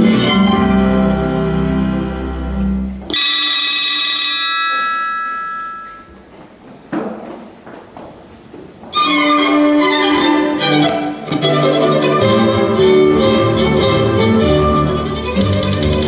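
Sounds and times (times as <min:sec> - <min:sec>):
bell-like chime: 0:03.1 - 0:06.2.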